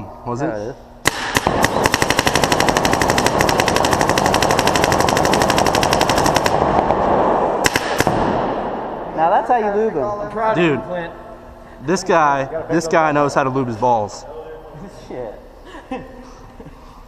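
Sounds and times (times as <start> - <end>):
steady background noise: 0.0 - 17.0
paintball marker firing: 1.0 - 8.6.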